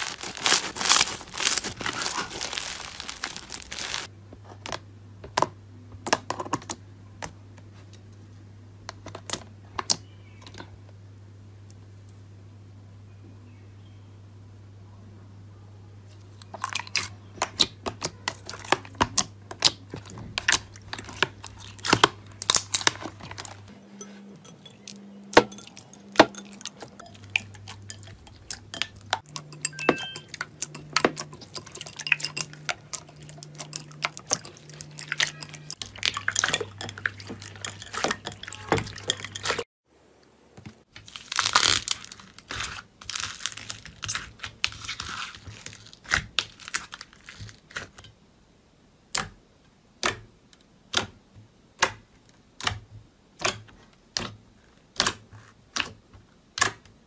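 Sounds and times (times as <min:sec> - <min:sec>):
slime crackling and popping: 0:00.0 - 0:04.1, 0:20.4 - 0:23.6, 0:41.0 - 0:47.9
slime crunching and tearing: 0:00.0 - 0:04.1, 0:20.0 - 0:23.7, 0:41.0 - 0:48.0.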